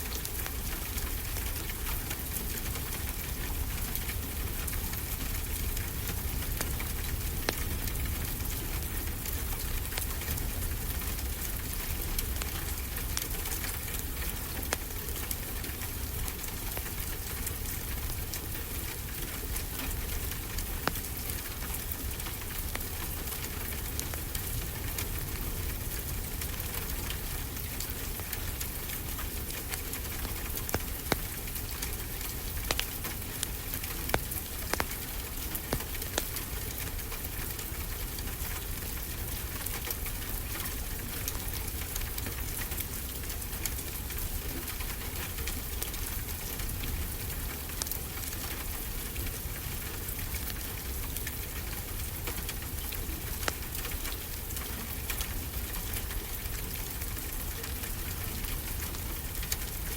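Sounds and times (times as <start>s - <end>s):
steady rain: 0.0s - 59.9s
wood fire crackling: 0.0s - 59.9s
fire popping: 19.2s - 37.7s, 52.4s - 55.4s.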